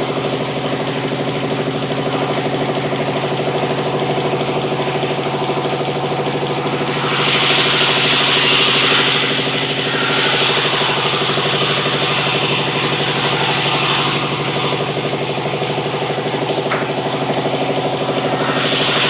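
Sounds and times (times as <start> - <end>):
saw hissing: 5.4 - 19.0.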